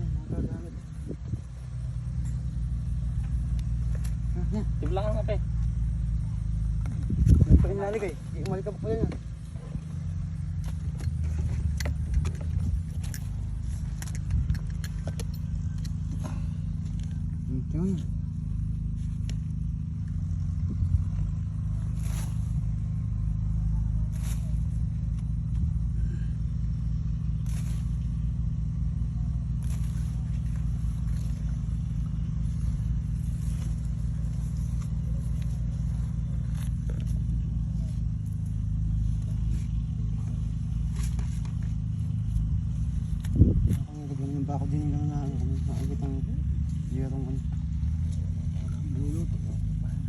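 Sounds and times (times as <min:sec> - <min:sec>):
low rumble: 0:00.0 - 0:50.0
water pump engine droning: 0:00.0 - 0:50.0
light clinks and knocks: 0:10.6 - 0:17.3.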